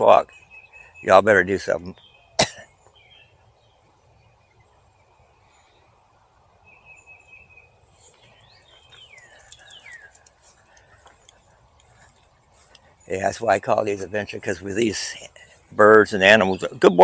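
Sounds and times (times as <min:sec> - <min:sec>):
birds whistling calls: 0:00.0 - 0:05.8, 0:06.6 - 0:13.3
faint background noise: 0:00.0 - 0:17.0.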